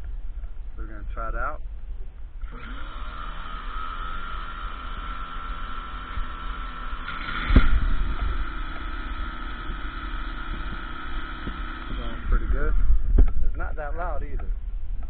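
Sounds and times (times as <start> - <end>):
electric pressure washer running: 2.4 - 13.1.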